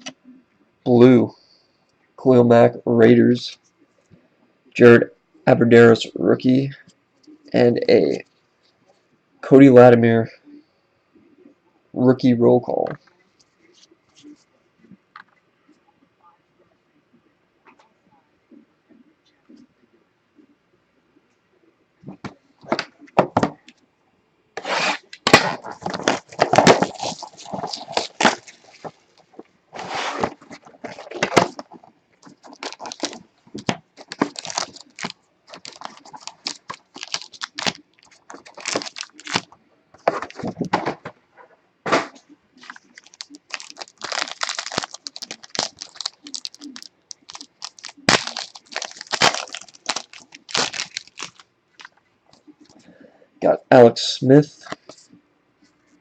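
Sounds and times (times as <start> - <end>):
cards being handled: 24.6 - 40.8, 42.6 - 52.0
foil wrapper tearing and crinkling: 25.3 - 28.9, 32.4 - 39.5, 42.6 - 51.9.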